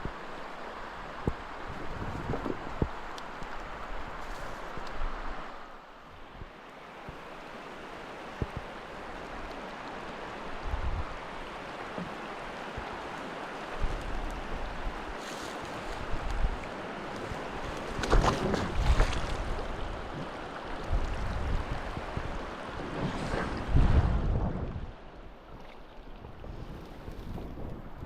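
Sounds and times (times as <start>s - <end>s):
river water rushing: 0.0s - 26.2s
wind on microphone: 1.1s - 3.1s, 10.4s - 11.3s, 13.7s - 28.0s.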